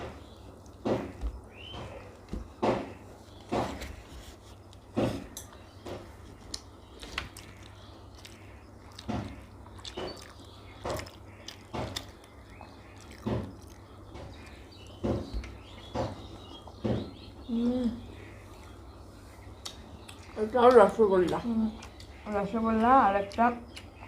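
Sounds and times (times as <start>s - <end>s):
low steady hum: 0.0s - 24.0s
wet chewing and slurping: 6.4s - 14.5s.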